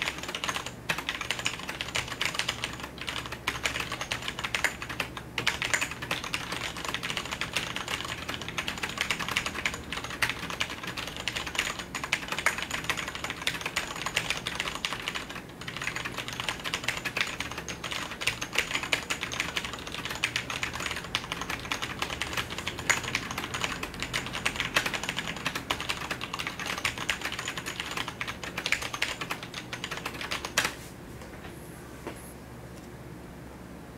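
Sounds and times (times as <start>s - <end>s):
mechanical keyboard typing: 0.0s - 30.8s.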